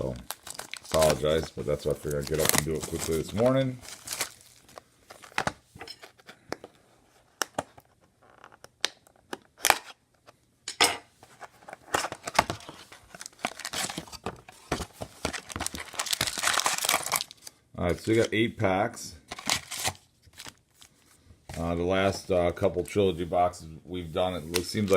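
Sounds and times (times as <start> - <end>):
plastic wrap tearing and crinkling: 0.0 - 5.4, 13.1 - 18.3, 19.3 - 20.9.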